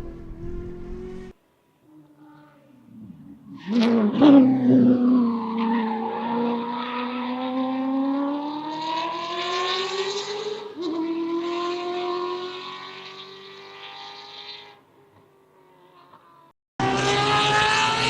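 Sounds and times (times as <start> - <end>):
car engine accelerating hard: 0.0 - 1.4, 16.8 - 18.0.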